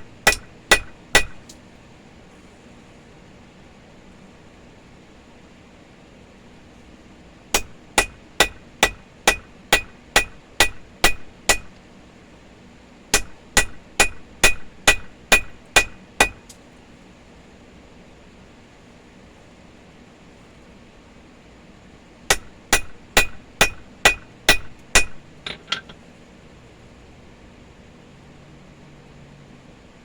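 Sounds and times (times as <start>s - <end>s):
hammer striking steel on anvil: 0.0s - 1.5s, 7.6s - 11.8s, 13.1s - 16.6s, 22.3s - 26.0s.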